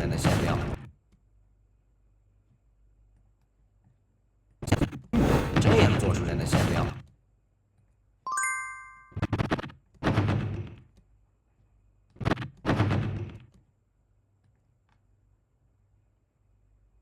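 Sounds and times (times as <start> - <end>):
bright ringing ding: 8.3 - 9.2.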